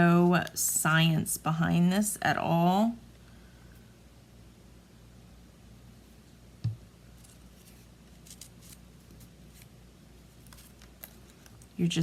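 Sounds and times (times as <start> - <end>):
low steady hum: 0.0 - 12.0
paper rustling and clicking: 10.4 - 11.7.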